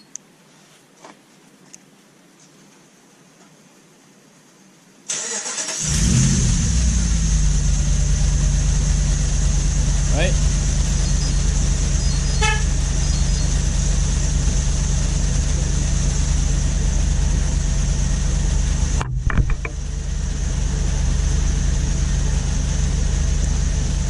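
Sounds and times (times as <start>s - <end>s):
car engine idling: 5.2s - 24.0s.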